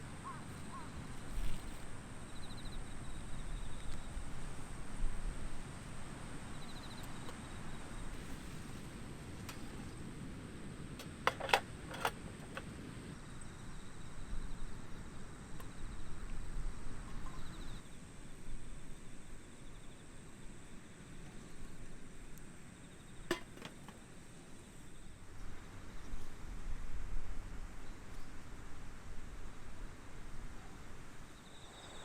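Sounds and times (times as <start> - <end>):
wind gusting with low rumble: 0.0 - 32.0.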